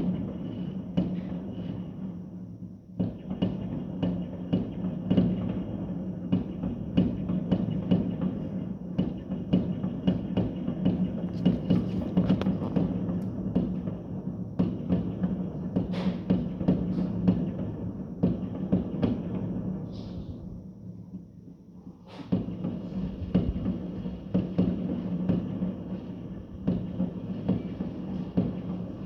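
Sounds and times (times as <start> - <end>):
fireworks bangs and cracks: 3.0 - 19.8, 22.3 - 29.0
steady low hum: 10.5 - 15.8.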